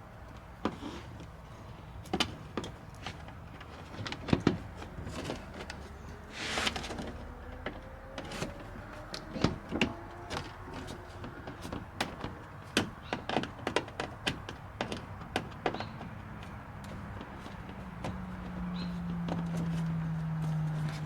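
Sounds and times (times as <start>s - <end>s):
short scraping swish: 6.3s - 6.9s
plastic panel knocks and clicks: 9.1s - 18.6s.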